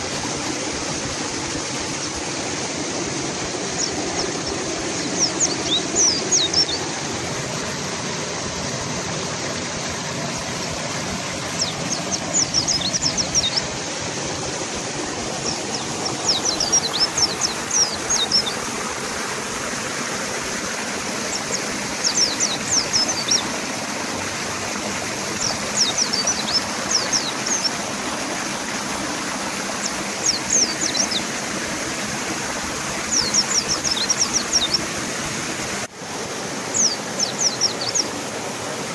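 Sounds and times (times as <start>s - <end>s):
river water rushing: 0.0s - 38.9s
bird twittering song: 1.9s - 7.2s, 10.4s - 13.9s, 15.2s - 19.1s, 20.7s - 31.5s, 32.9s - 34.9s, 36.6s - 38.3s.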